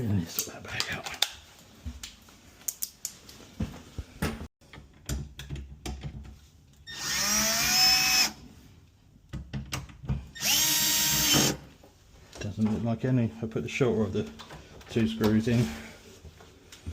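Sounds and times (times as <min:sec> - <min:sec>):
cordless drill whine: 0:06.9 - 0:08.4, 0:10.4 - 0:11.6.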